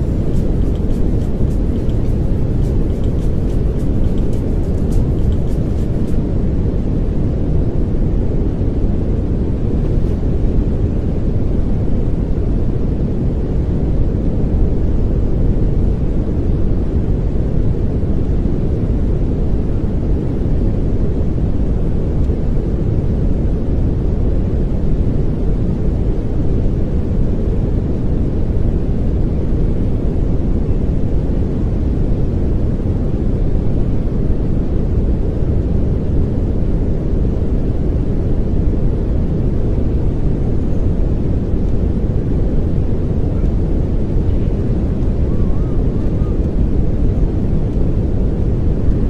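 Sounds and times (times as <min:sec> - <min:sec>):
pink noise hiss: 0:00.0 - 0:06.8.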